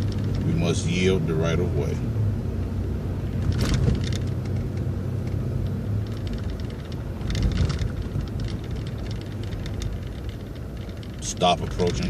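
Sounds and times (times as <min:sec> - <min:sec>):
clattering rattles: 0:00.0 - 0:00.6, 0:03.4 - 0:12.0
bus engine and road rumble: 0:00.0 - 0:12.0.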